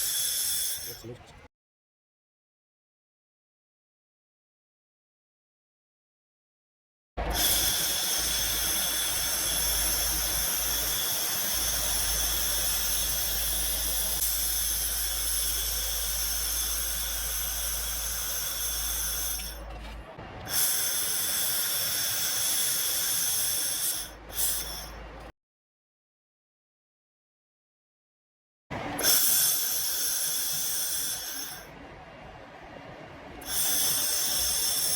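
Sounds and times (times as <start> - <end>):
laser welder hissing: 0.0 - 1.2, 7.2 - 19.7, 20.5 - 25.2, 29.0 - 31.7, 33.4 - 34.9
low hum: 7.2 - 20.5, 29.6 - 34.9.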